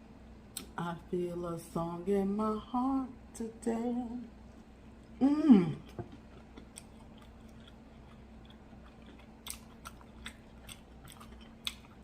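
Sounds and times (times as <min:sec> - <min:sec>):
crisp chewing crunches: 0:05.8 - 0:12.0.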